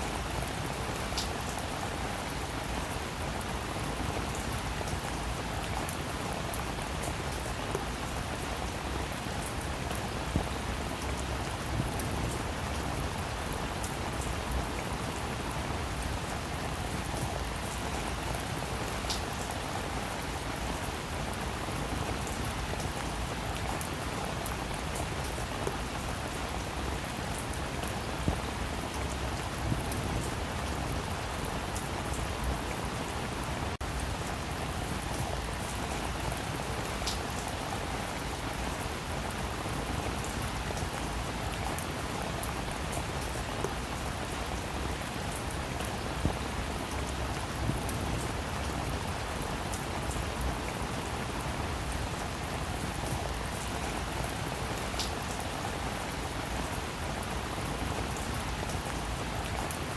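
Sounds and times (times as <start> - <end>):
steady rain hissing: 0.0 - 59.9.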